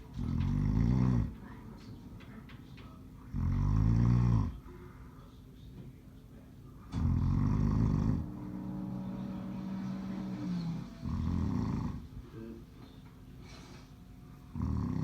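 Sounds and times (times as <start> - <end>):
man snoring: 0.2 - 1.3, 3.3 - 4.6, 7.0 - 9.0, 9.8 - 12.1, 14.5 - 15.0.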